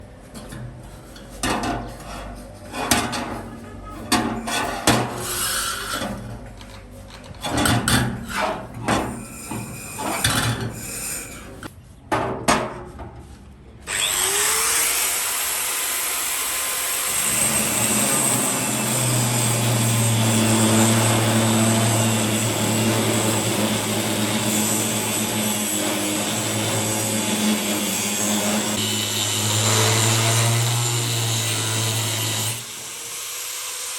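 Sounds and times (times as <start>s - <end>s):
power tool humming: 13.9s - 33.9s.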